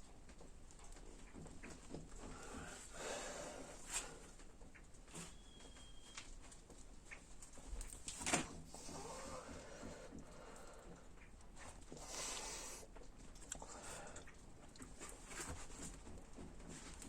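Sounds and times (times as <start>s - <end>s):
clicks and rustles of handling: 3.8s - 12.0s, 12.8s - 17.0s.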